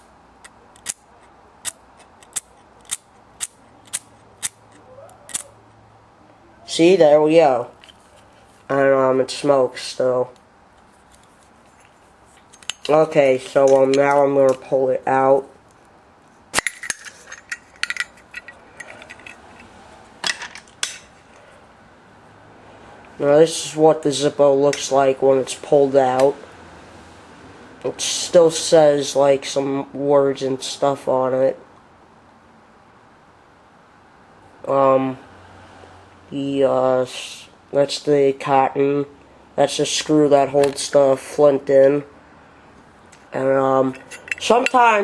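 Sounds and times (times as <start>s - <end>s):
light metal scraping: 7.7s - 8.8s, 16.6s - 21.5s, 43.6s - 45.0s.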